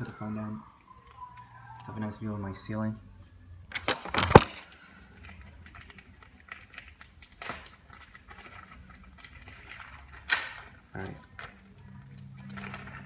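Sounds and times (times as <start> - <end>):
handling clicks and rustling: 3.7 - 13.0.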